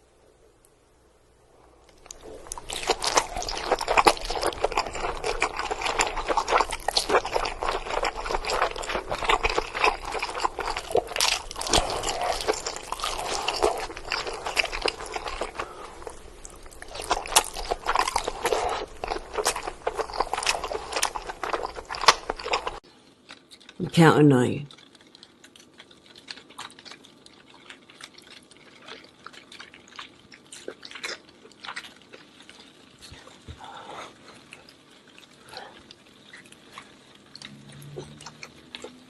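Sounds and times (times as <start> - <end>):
chewing: 1.8 - 23.8, 24.7 - 39.0
crab shell crunching: 1.8 - 23.8, 24.7 - 33.4.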